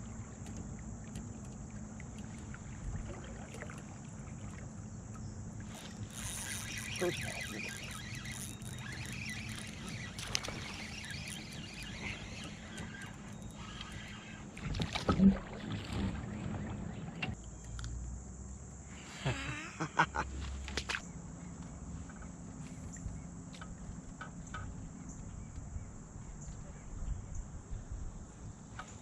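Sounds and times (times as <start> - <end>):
water sounds: 0.0 - 17.5.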